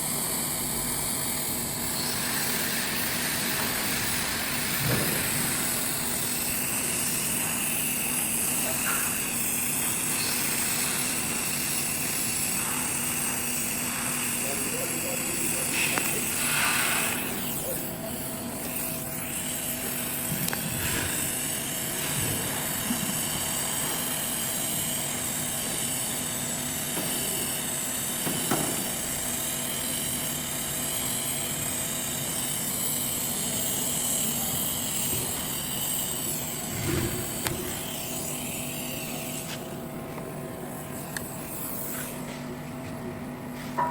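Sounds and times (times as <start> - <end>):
steady mechanical drone: 0.0 - 43.9.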